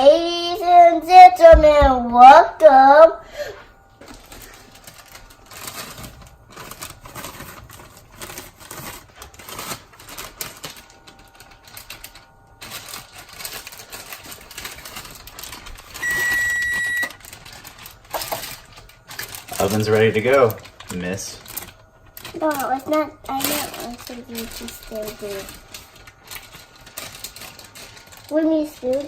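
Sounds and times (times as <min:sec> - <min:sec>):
electronic oven beep: 0:15.9 - 0:17.2.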